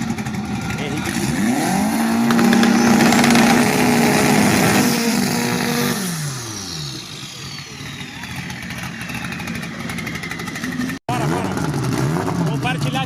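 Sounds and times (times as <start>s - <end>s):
car engine revving: 0.0s - 13.0s.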